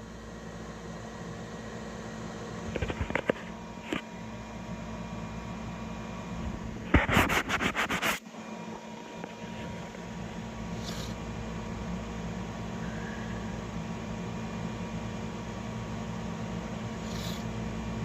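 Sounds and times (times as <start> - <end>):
printer fan hum: 0.0 - 18.0.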